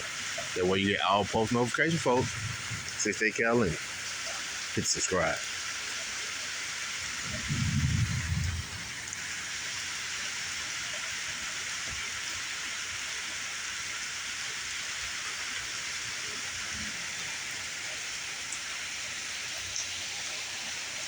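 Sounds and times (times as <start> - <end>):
steady rain falling: 0.0 - 21.0
low rumble: 7.3 - 8.9.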